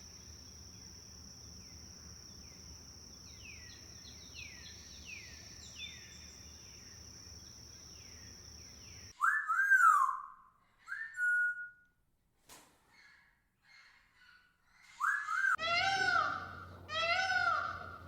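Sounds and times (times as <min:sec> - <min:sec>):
whistled bird calls: 0:08.8 - 0:11.8, 0:14.9 - 0:16.4
short falling bird calls: 0:12.9 - 0:18.0.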